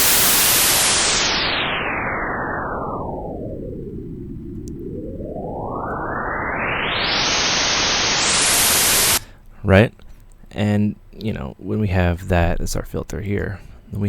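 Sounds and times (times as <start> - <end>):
filtered white noise hiss: 0.0 - 14.0.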